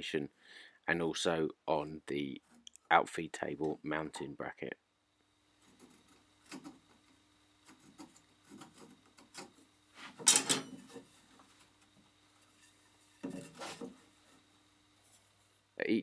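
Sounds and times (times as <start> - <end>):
pencil scraping wood: 5.6 - 6.9, 7.6 - 11.8, 12.4 - 15.3
scratching and rubbing on wood: 5.6 - 15.5.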